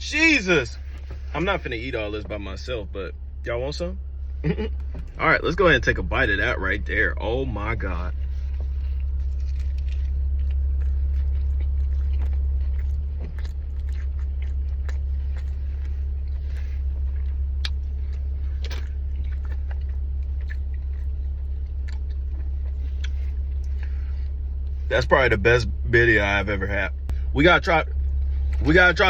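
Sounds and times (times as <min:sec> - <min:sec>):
steady low hum: 0:00.0 - 0:29.0
person chewing crunchy food: 0:06.4 - 0:24.8.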